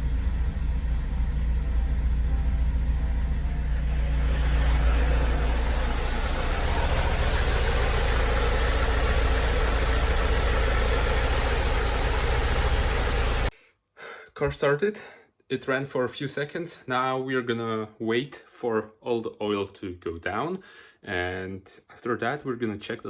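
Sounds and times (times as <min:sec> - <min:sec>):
car engine running: 0:00.0 - 0:13.5.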